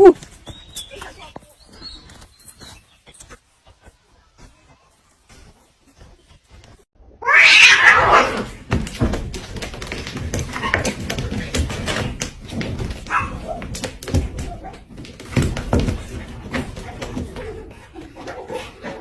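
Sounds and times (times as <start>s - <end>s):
cat crying: 7.2s - 8.5s
knocking and scuffling: 8.5s - 19.0s.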